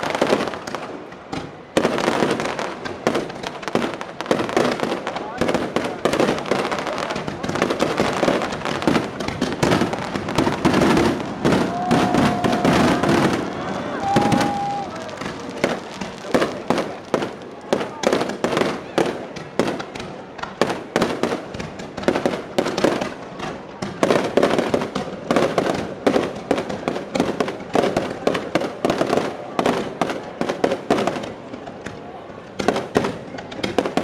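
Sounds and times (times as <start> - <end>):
fireworks bangs and crackles: 0.0 - 34.0.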